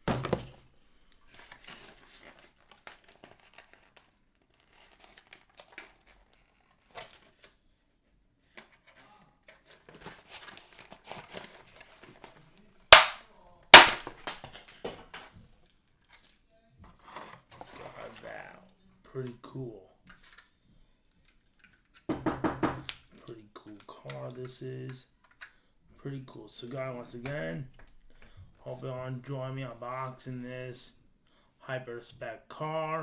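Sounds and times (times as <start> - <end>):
toy packaging crinkling: 1.5 - 7.5
loud sharp plastic cracks: 13.0 - 13.2, 13.8 - 14.4.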